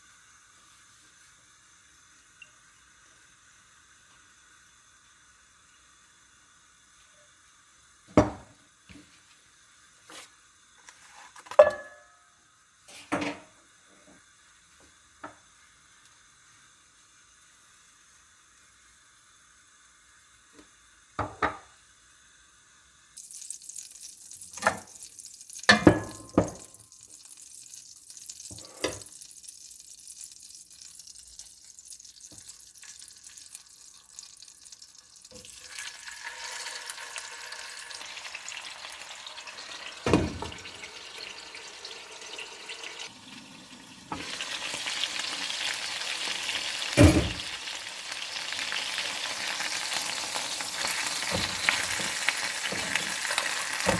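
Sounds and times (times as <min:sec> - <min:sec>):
food sizzling in hot oil: 0:00.0 - 0:53.9.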